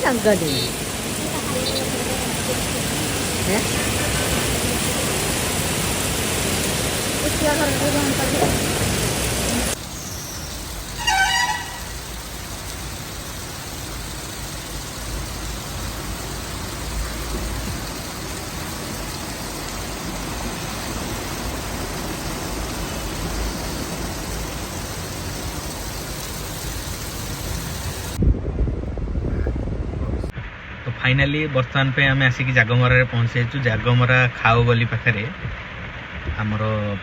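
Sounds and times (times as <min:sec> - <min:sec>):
traffic on a wet road: 0:00.0 - 0:28.2, 0:30.4 - 0:37.0
rain: 0:00.0 - 0:37.0
vehicle horn toot: 0:00.3 - 0:00.8, 0:01.5 - 0:02.1, 0:11.0 - 0:12.0.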